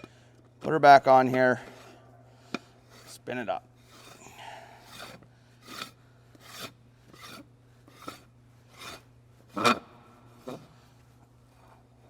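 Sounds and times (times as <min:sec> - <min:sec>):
hubcap scraping on threads: 0:02.8 - 0:09.8.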